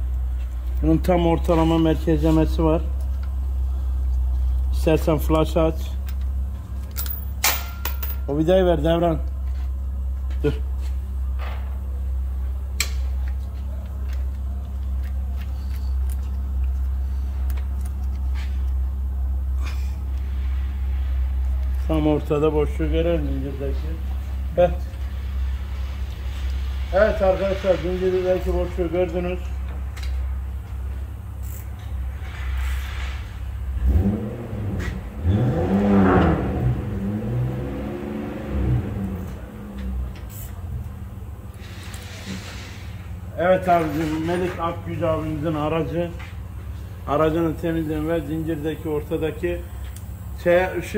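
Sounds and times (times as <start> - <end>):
low machine hum: 0.0 - 50.9
vehicle engine revving: 32.1 - 43.2.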